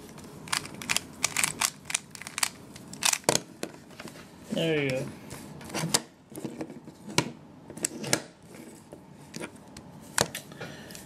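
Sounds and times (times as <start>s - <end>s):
puzzle cube clicking: 0.5s - 3.2s.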